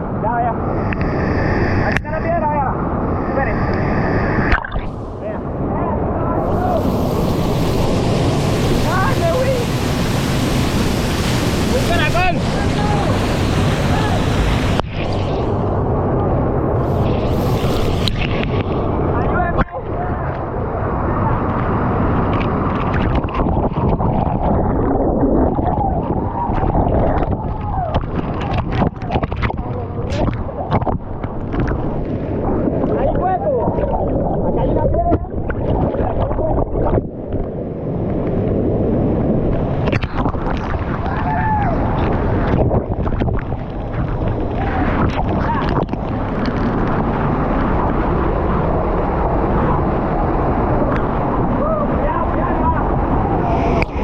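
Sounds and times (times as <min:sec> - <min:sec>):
small waterfall rushing and splashing: 0:06.4 - 0:14.8.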